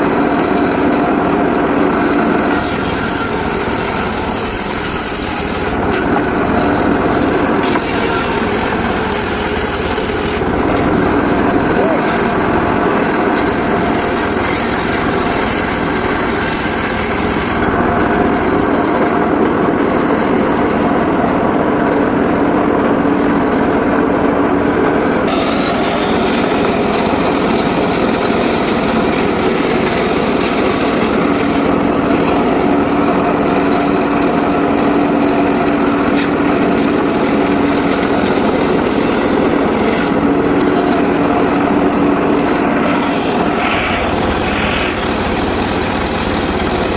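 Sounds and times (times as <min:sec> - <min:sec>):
circular saw cutting wood: 0:00.0 - 0:20.5, 0:25.1 - 0:46.9.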